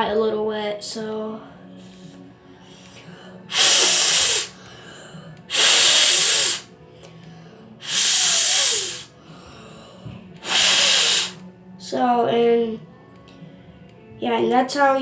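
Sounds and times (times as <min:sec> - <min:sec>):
person blowing puffs of air: 0:02.7 - 0:04.7, 0:05.5 - 0:06.8, 0:07.8 - 0:09.2, 0:10.4 - 0:11.5.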